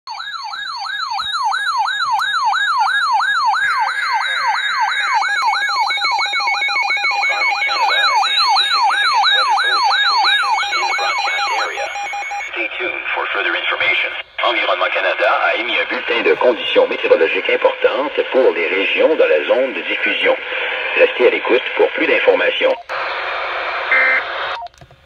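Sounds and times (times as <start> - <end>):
electronic siren sweeping: 0.1 - 12.5, 23.9 - 24.2
electronic beep tones: 3.7 - 12.5, 23.9 - 24.7.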